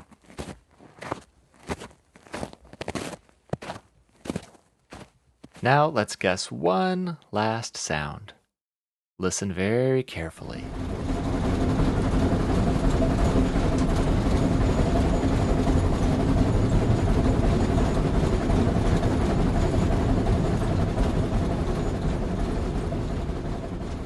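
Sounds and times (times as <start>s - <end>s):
held train tones: 10.2s - 24.0s
steam train rumbling: 10.4s - 24.0s.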